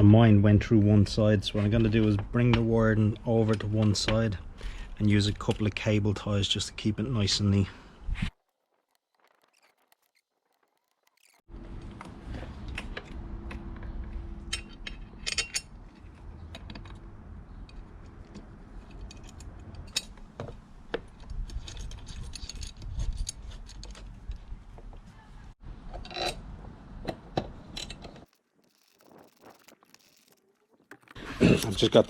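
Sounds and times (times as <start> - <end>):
clicks and rattles of parts handled: 12.7 - 24.5, 27.1 - 32.0
cable ties being zipped: 28.3 - 30.8.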